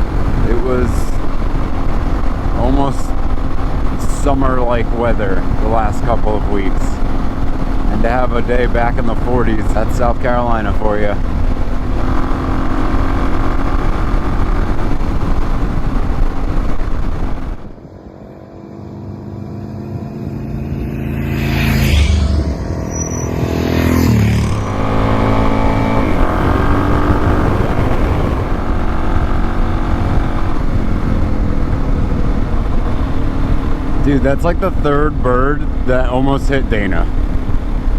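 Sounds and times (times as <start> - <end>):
wind noise: 0.0 - 18.9, 19.8 - 37.9
vehicle passing: 0.0 - 35.1
motorcycle engine: 0.0 - 37.9.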